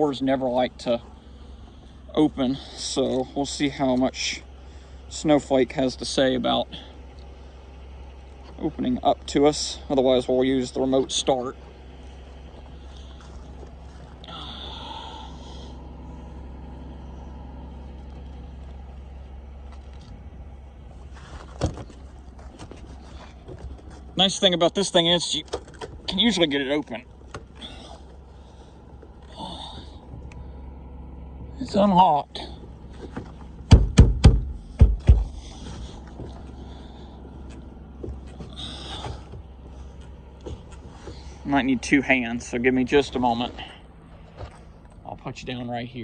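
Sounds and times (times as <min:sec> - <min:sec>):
car engine idling: 0:00.0 - 0:46.0
heavy thumps on car door: 0:33.2 - 0:35.5.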